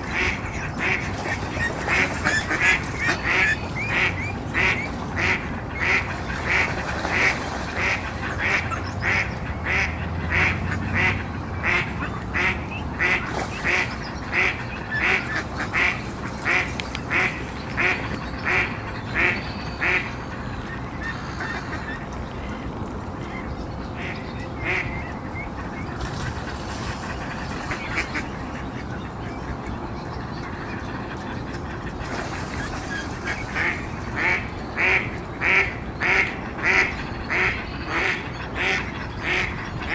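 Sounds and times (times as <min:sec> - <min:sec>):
duck quacking: 0:00.1 - 0:01.2, 0:01.8 - 0:22.0, 0:24.0 - 0:24.9, 0:33.5 - 0:39.9.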